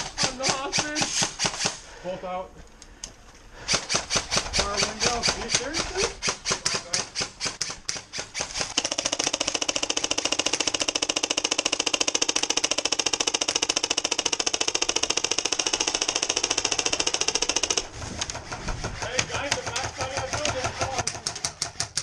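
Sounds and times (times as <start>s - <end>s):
airsoft gun firing: 0.0s - 1.8s, 3.7s - 22.0s
gun motor whirring: 7.1s - 19.1s.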